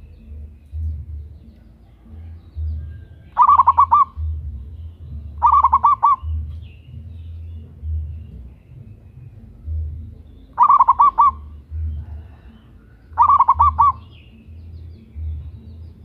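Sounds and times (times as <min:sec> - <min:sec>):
dove cooing: 0:03.3 - 0:04.5, 0:05.4 - 0:06.6, 0:10.5 - 0:14.1.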